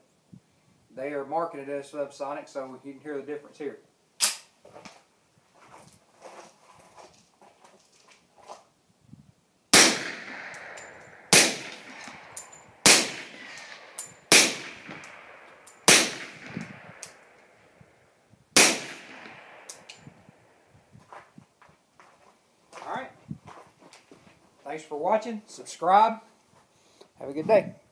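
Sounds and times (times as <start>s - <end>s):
suppressed pistol shots: 9.7s - 17.6s, 18.6s - 20.6s.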